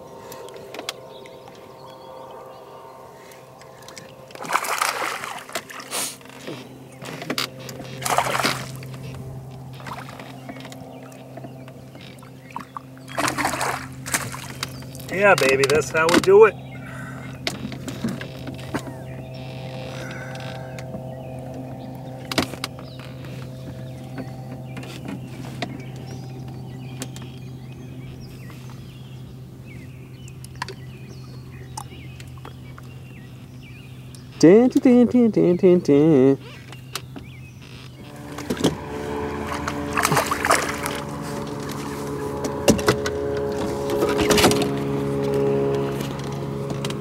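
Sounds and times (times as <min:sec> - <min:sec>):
steady low hum: 0:00.0 - 0:47.0
fish splashing in water: 0:03.7 - 0:06.8, 0:07.5 - 0:11.3, 0:12.0 - 0:15.1, 0:38.3 - 0:42.2.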